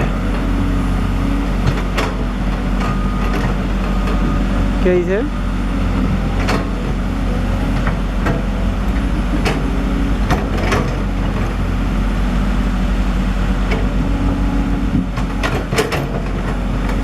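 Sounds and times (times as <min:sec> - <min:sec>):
excavator diesel engine running: 0:00.0 - 0:17.0
machine knocks and clanks: 0:01.6 - 0:04.2, 0:06.0 - 0:07.0, 0:07.7 - 0:11.6, 0:14.9 - 0:17.0.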